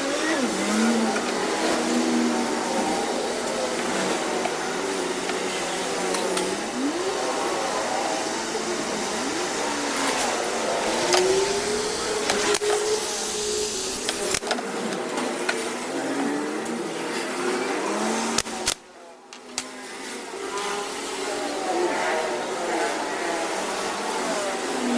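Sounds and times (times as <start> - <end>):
electric power tool motor: 0.0 - 18.8.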